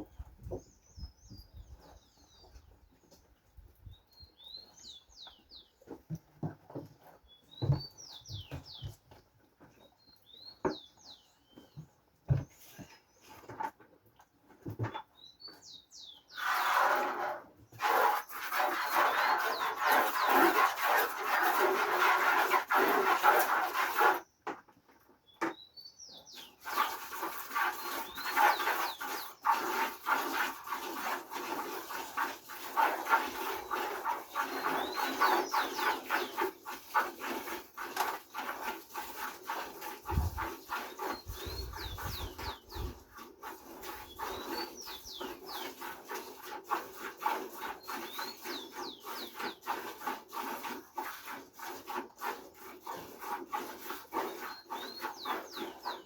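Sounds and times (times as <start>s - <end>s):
milk squirting into a pail: 16.4s - 24.2s, 26.5s - 48.6s.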